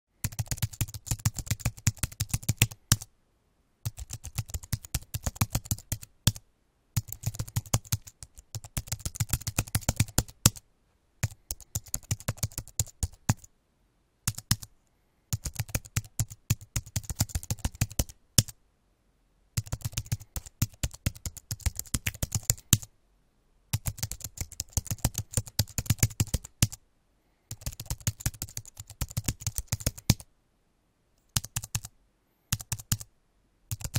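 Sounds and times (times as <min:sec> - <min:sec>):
keyboard typing clicks: 0:00.2 - 0:03.1, 0:03.9 - 0:06.4, 0:07.0 - 0:10.6, 0:11.2 - 0:13.5, 0:14.3 - 0:14.7, 0:15.3 - 0:18.5, 0:19.6 - 0:22.9, 0:23.8 - 0:26.8, 0:27.5 - 0:30.2, 0:31.3 - 0:31.9, 0:32.5 - 0:33.1.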